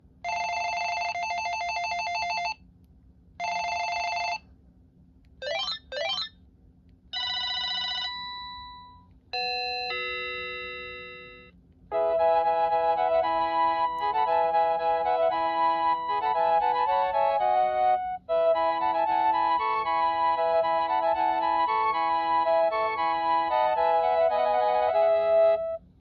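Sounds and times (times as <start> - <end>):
cordless phone electronic ringtones: 0.3 - 2.6, 3.4 - 4.4, 5.4 - 6.3, 7.2 - 11.5.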